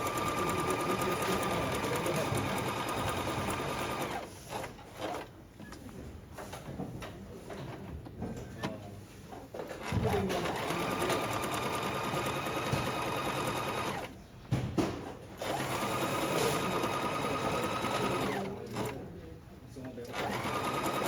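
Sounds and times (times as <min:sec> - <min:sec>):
sewing machine running: 0:00.0 - 0:05.3, 0:09.8 - 0:14.2, 0:15.4 - 0:19.0, 0:20.1 - 0:21.0.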